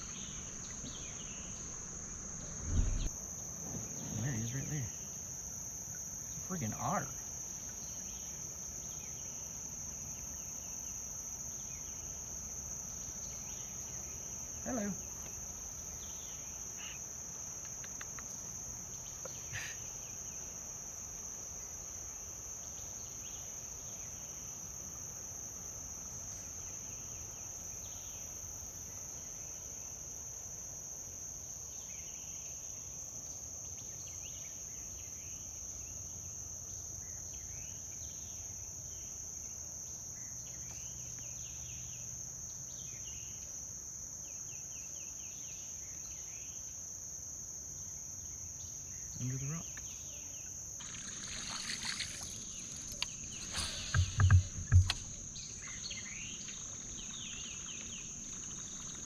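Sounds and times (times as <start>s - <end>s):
high-pitched insect chorus: 0.0s - 59.0s
short bird chirps: 50.8s - 56.4s.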